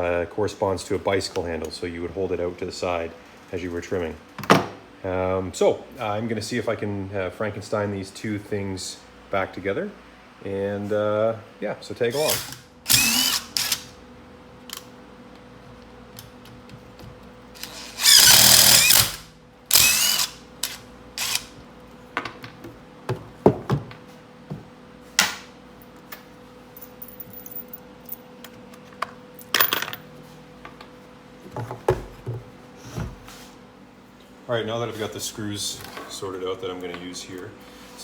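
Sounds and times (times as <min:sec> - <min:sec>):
power drill whining: 0:12.2 - 0:13.9, 0:17.6 - 0:21.5.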